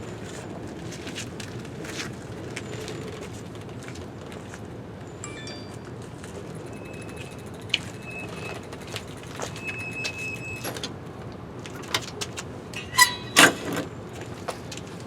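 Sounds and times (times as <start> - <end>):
metal clanks: 12.8 - 13.9.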